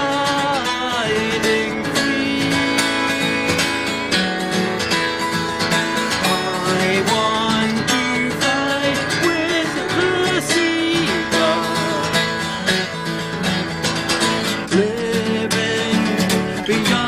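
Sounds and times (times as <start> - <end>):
acoustic guitar song: 0.0 - 17.0.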